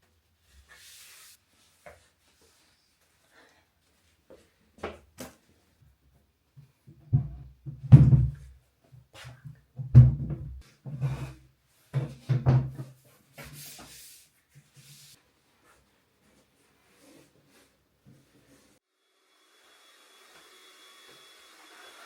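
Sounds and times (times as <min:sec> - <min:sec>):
knocks and dull thumps: 0:07.0 - 0:08.5, 0:09.5 - 0:10.6, 0:11.9 - 0:12.9.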